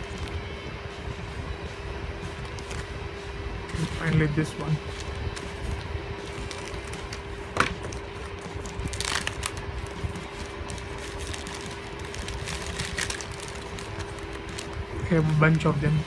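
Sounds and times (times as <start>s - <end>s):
steady background hum: 0.0s - 16.0s
plastic packaging crinkling: 2.4s - 2.9s, 4.8s - 15.2s.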